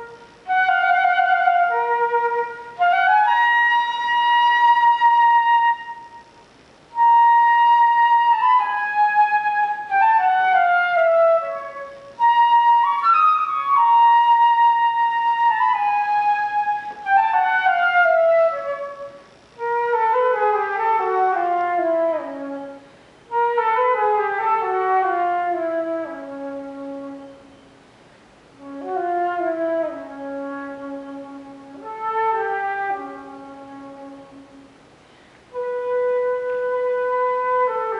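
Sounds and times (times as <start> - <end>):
solo flute playing: 0.0 - 27.8, 28.6 - 37.9.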